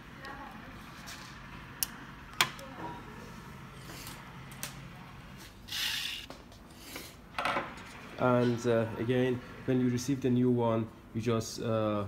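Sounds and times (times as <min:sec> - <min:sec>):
metal parts scraping: 0:05.7 - 0:06.3.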